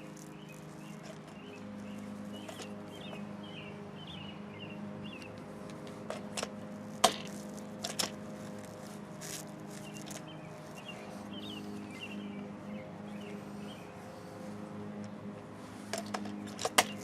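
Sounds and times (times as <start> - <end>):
small birds chirping: 0.0 - 17.0
steady low hum: 0.0 - 17.0.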